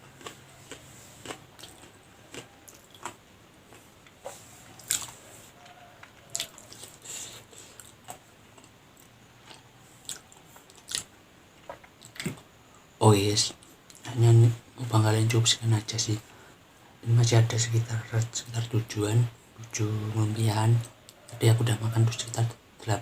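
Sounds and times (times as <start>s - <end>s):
chewing crunchy fried food: 0.0s - 12.5s.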